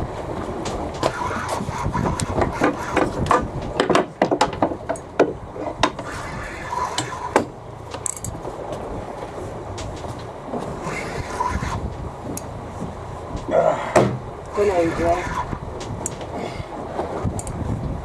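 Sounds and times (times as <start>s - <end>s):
hard objects knocking and clacking: 2.3s - 6.0s
low rumble: 4.7s - 18.0s.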